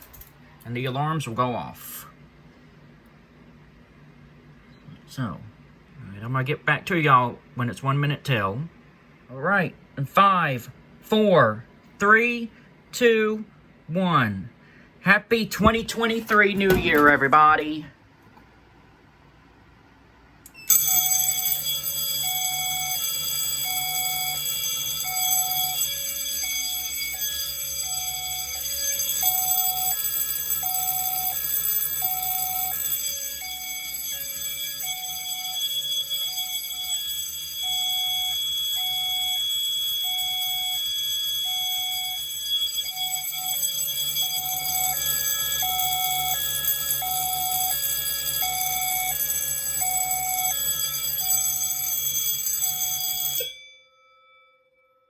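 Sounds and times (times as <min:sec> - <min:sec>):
steady high alarm tone: 0:15.5 - 0:17.9, 0:20.5 - 0:55.0
fire alarm bell ringing: 0:15.6 - 0:17.7, 0:20.5 - 0:55.0
pulsing two-tone alarm signal: 0:20.6 - 0:53.6.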